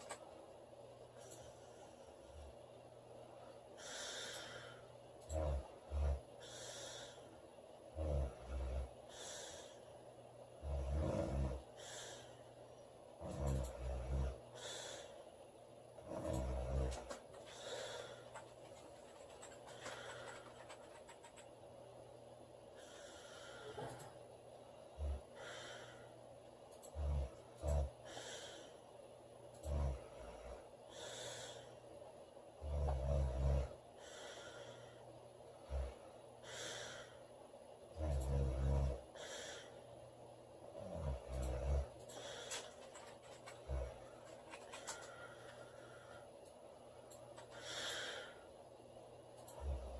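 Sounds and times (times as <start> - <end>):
woman snoring: 3.8 - 7.2, 7.9 - 9.8, 10.6 - 12.3, 13.2 - 15.1, 16.0 - 18.2, 29.6 - 31.7, 32.6 - 35.0, 38.0 - 39.8, 40.8 - 42.6
breathy hisses of air: 47.6 - 48.5.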